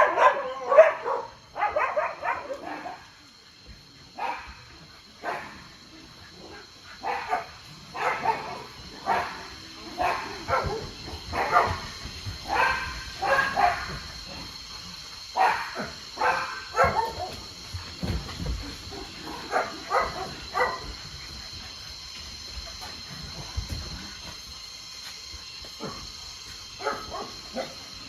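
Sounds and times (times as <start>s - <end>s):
dogs barking: 0.0s - 3.2s, 4.1s - 14.6s, 15.2s - 17.6s, 18.9s - 21.8s, 26.8s - 27.8s.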